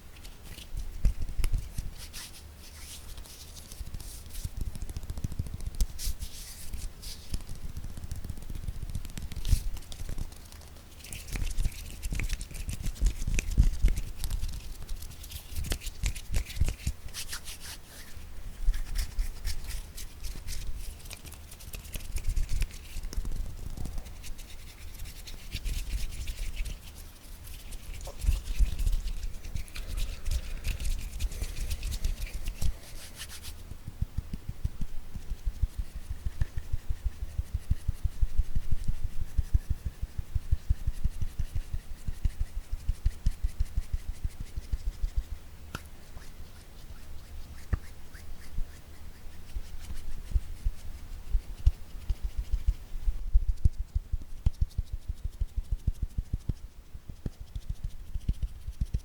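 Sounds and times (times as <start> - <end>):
fingertip tapping: 3.9 - 6.0, 7.3 - 14.9.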